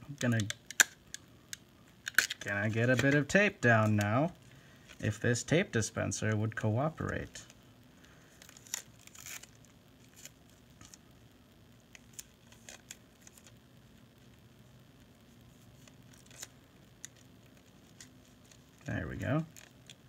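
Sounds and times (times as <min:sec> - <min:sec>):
adhesive tape ripping: 0:08.4 - 0:11.0.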